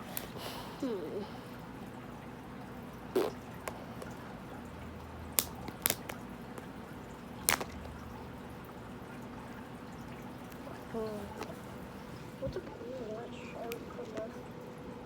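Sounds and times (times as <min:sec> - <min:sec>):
plastic egg clicks and taps: 0:05.4 - 0:06.7, 0:07.5 - 0:07.8.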